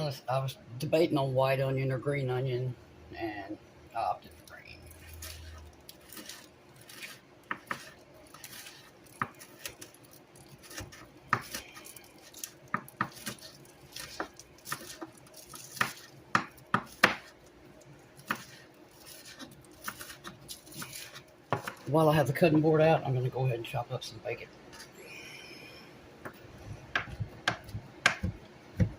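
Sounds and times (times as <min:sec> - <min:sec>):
knife tapping on cutting board: 0:26.2 - 0:28.9.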